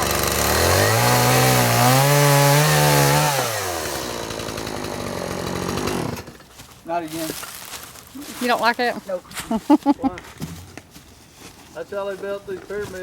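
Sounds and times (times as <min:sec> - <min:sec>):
chainsaw revving and idling: 0:00.0 - 0:06.5.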